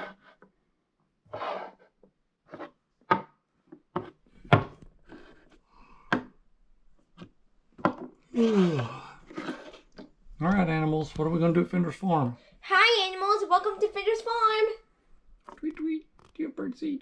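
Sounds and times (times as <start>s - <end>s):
toys scraping on hard surface: 0.0s - 0.5s, 1.3s - 2.8s, 3.9s - 5.6s
toy figures knocking on hard surface: 6.1s - 6.4s.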